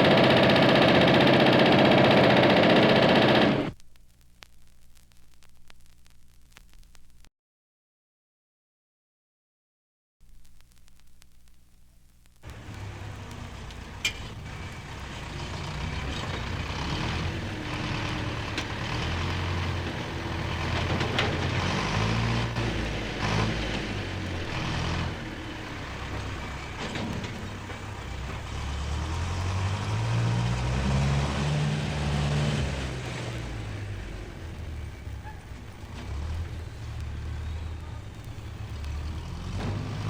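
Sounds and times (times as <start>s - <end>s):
heavy vehicle engine revving: 0.0s - 3.8s, 12.5s - 40.0s.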